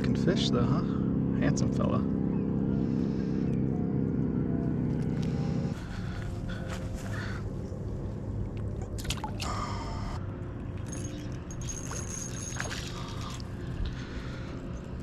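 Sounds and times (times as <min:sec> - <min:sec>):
water sloshing at shoreline: 0:10.6 - 0:14.1.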